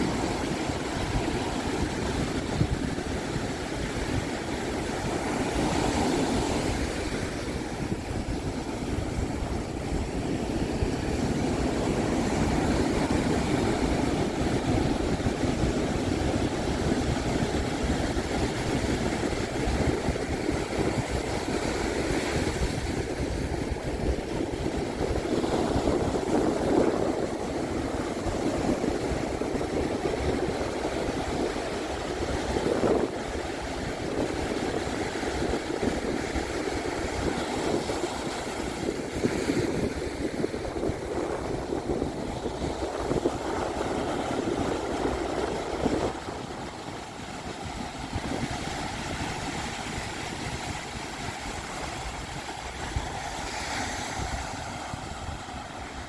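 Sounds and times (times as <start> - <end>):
ocean surf breaking: 0.0 - 56.0.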